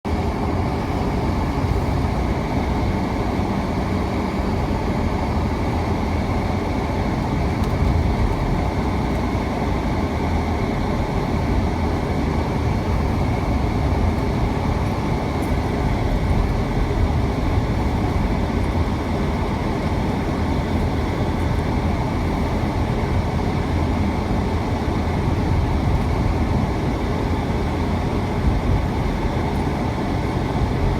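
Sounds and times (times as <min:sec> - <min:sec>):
vehicle driving low rumble: 0:00.1 - 0:30.9.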